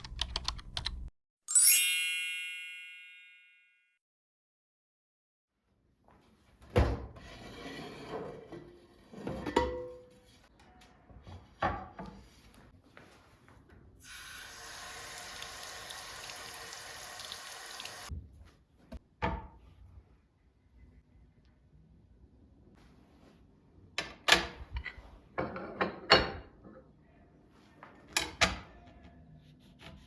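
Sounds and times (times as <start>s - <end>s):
tap water running into sink: 14.0s - 18.1s.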